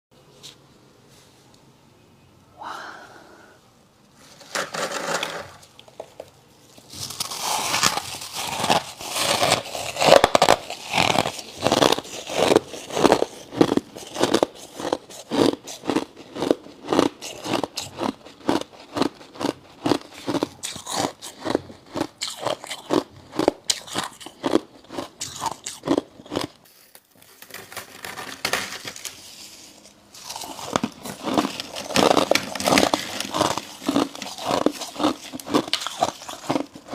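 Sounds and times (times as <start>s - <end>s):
person crunching frost: 6.8s - 36.9s.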